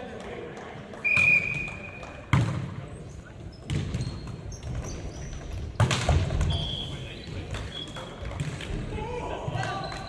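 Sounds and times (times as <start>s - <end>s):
sneaker squeaks: 1.0s - 2.2s, 3.4s - 5.6s, 6.4s - 8.2s
basketball bouncing on court: 3.6s - 5.0s.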